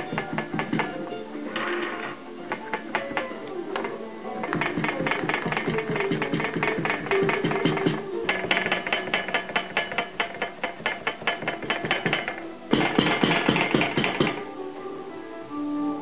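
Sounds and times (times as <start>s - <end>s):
metal comb beater striking wool: 0.0s - 1.1s, 4.4s - 14.5s
soft background music: 0.0s - 16.0s.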